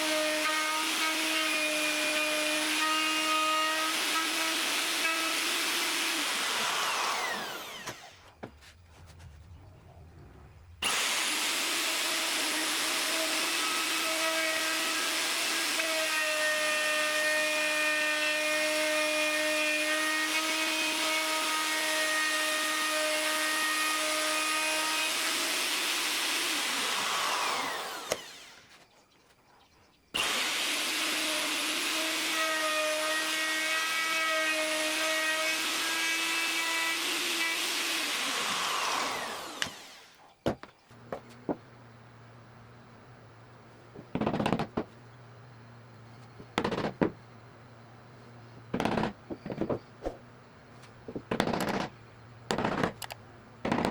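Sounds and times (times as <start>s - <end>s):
high-speed electric power tool: 0.0s - 8.3s, 10.8s - 28.7s, 30.2s - 40.2s.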